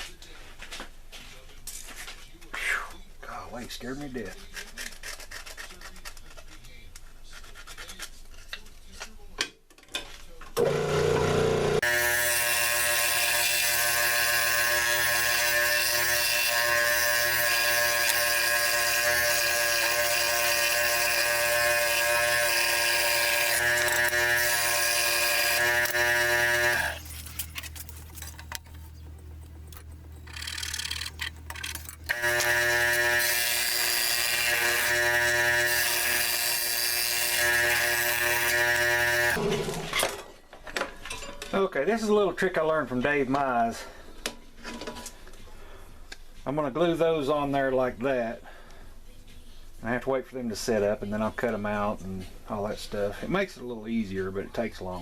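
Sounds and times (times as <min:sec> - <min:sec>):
power tool motor humming: 0:10.6 - 0:29.0, 0:29.6 - 0:39.8.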